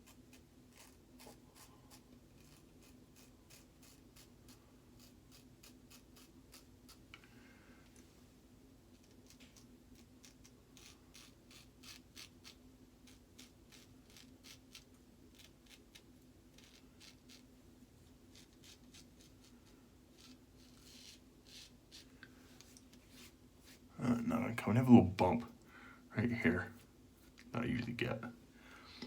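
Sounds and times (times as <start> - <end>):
razor scraping stubble: 0.0 - 7.0, 9.0 - 17.5, 18.3 - 23.8.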